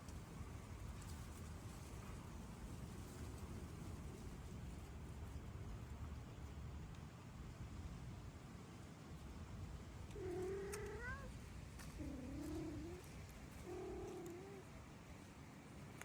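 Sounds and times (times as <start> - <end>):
cat meowing: 10.2 - 11.3.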